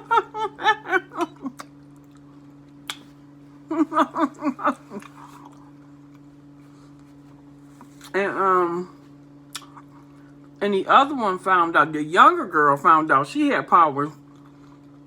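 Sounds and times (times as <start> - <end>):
woman chewing food: 0.0 - 8.1, 14.3 - 15.0
steady low hum: 0.0 - 15.0.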